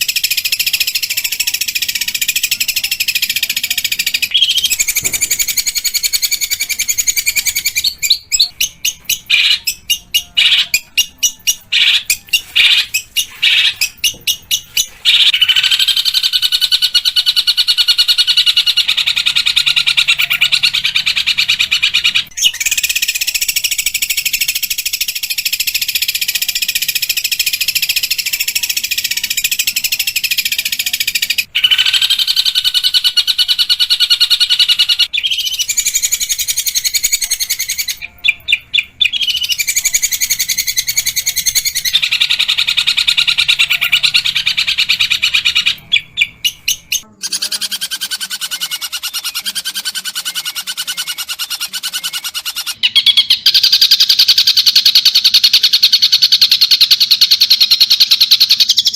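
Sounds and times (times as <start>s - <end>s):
bird singing harsh rasping song: 0.0s - 58.9s.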